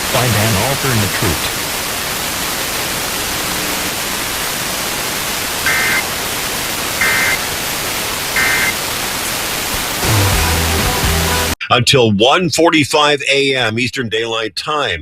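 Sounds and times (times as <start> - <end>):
radio receiver hiss: 0.0 - 10.0
two-tone data bursts: 5.6 - 6.2, 7.0 - 7.5, 8.3 - 8.8.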